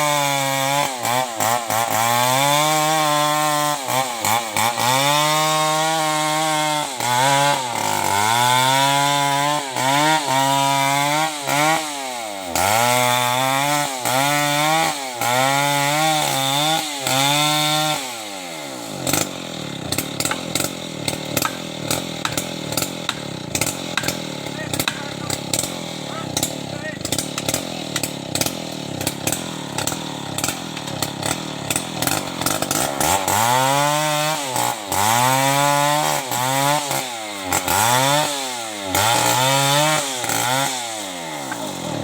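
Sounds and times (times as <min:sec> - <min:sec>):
chainsaw running at high revs: 0:00.0 - 0:42.0
knocks and crackles: 0:19.9 - 0:32.9.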